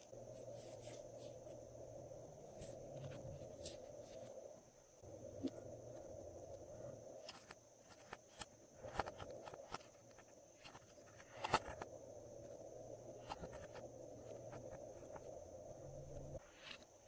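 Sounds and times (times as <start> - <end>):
faint background hum: 0.0 - 17.0.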